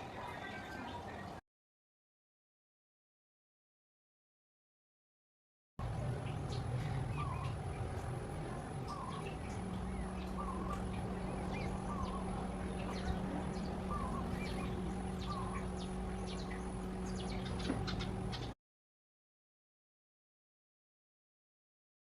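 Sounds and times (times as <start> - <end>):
high-pitched whine: 5.8 - 18.5
low hum: 5.8 - 18.6.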